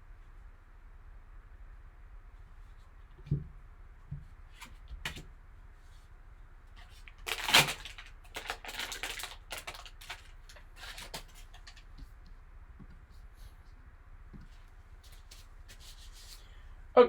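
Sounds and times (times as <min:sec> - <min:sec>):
packaging crinkling and rustling: 0:06.8 - 0:11.9
packaging crackling: 0:07.0 - 0:11.8.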